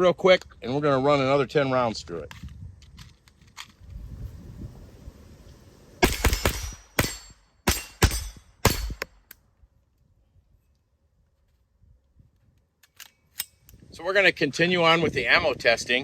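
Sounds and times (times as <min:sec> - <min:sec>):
rifle firing quick shots: 0:06.0 - 0:09.1.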